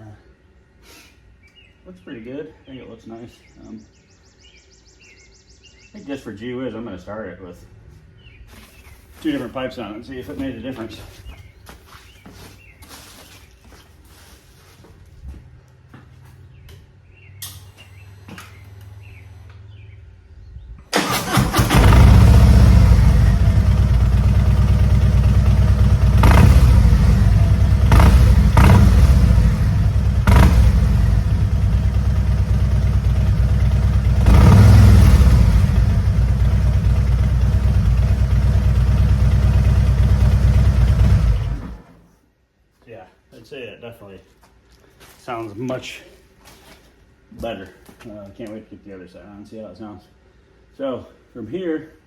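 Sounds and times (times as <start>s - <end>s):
motorcycle engine starting: 20.9s - 42.1s
motorcycle engine idling and revving: 21.0s - 42.0s.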